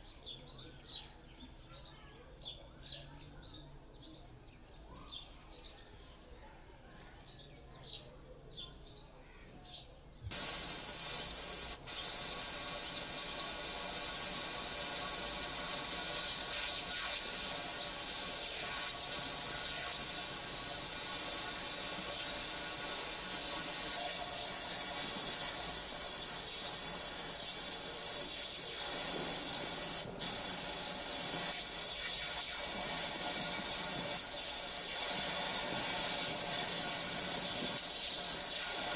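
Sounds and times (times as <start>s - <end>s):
loud spray hiss: 10.3s - 38.9s.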